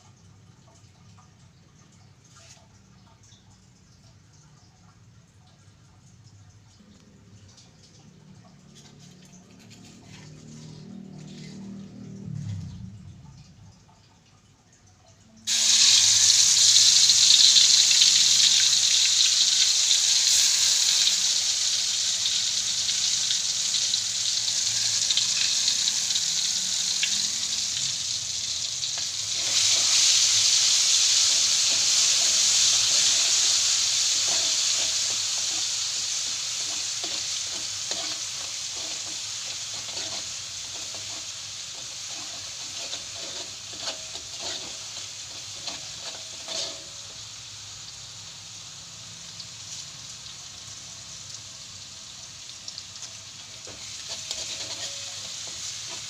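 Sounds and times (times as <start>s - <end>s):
food sizzling in oil: 15.5s - 56.0s.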